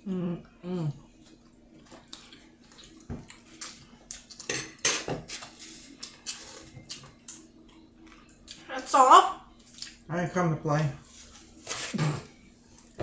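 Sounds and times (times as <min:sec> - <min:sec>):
chewing: 0:01.1 - 0:04.5.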